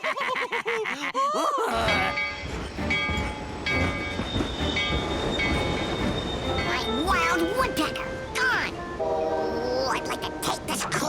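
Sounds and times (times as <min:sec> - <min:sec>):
cartoon train rumble: 0:01.7 - 0:11.0
train whistle tone: 0:03.8 - 0:07.4.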